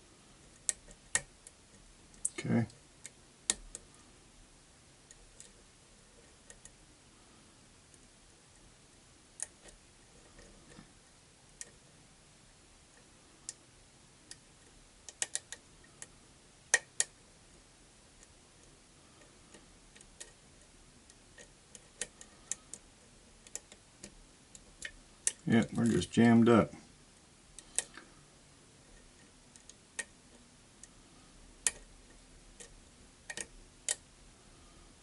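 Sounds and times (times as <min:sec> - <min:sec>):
lock pick clicking on pins: 0:15.1 - 0:16.1, 0:32.6 - 0:34.0.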